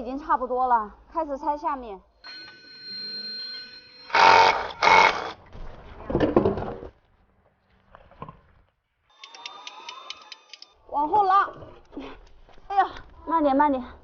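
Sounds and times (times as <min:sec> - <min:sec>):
power tool bursts: 0:04.0 - 0:05.4.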